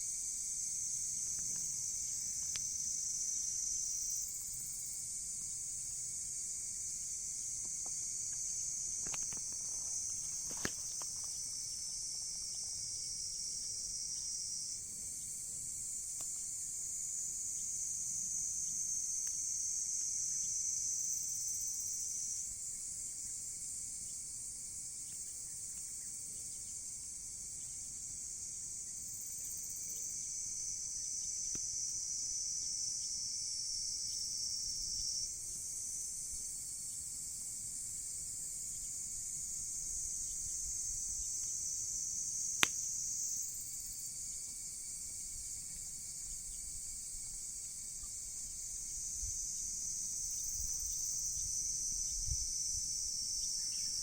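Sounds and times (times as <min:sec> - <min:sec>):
burning wood pop: 0:09.0 - 0:11.4, 0:42.6 - 0:42.9.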